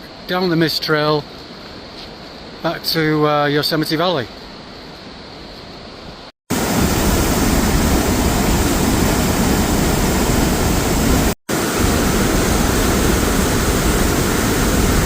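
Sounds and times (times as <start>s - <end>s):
rushing whitewater roar: 6.5s - 15.0s.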